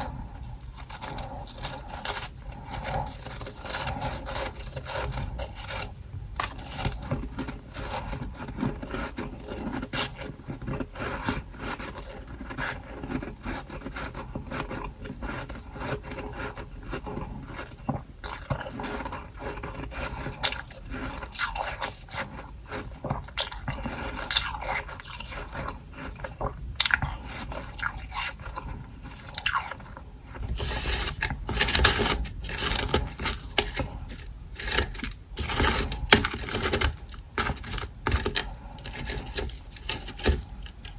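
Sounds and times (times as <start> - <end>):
crunching and chewing frost: 0.0 - 40.9
scraping: 30.4 - 40.9.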